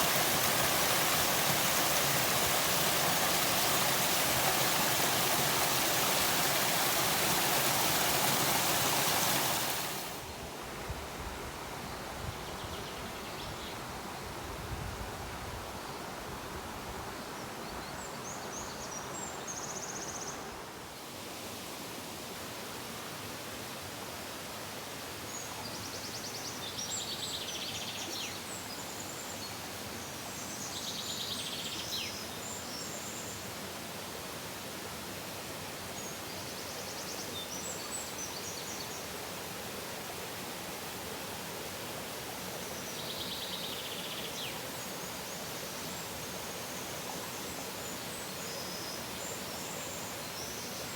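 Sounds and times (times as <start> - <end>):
steady outdoor hiss: 0.0 - 50.9.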